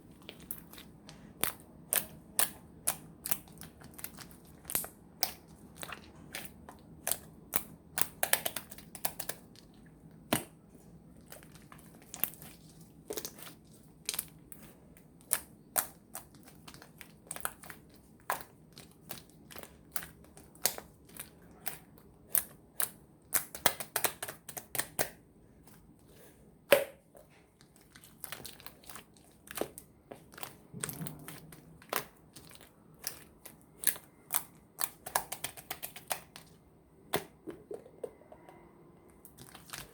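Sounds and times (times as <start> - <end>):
slime clicking and popping: 0.2 - 9.7, 15.2 - 25.2, 27.9 - 36.5.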